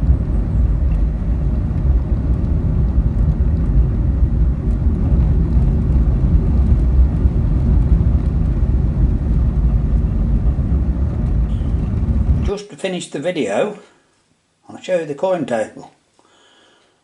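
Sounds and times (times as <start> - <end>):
car engine and road rumble: 0.0 - 12.5.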